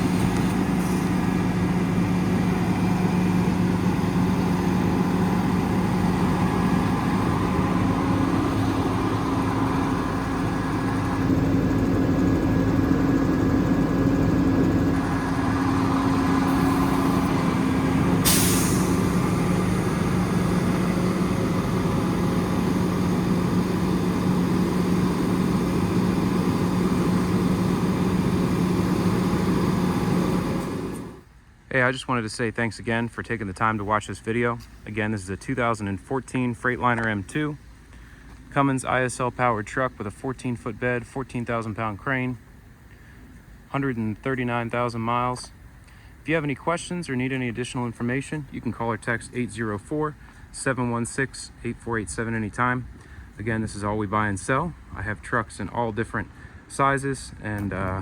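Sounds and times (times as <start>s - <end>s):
diesel truck engine running: 0.0s - 31.4s
sharp hiss of air: 18.2s - 19.2s.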